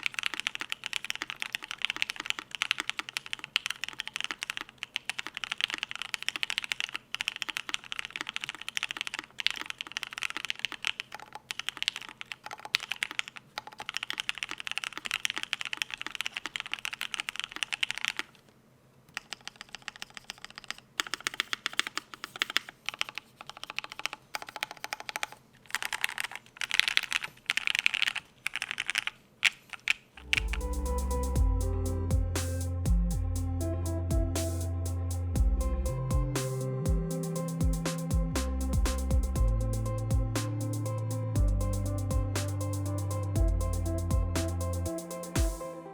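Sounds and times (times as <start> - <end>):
clacky mechanical keyboard typing: 0.0 - 18.4, 19.1 - 30.9.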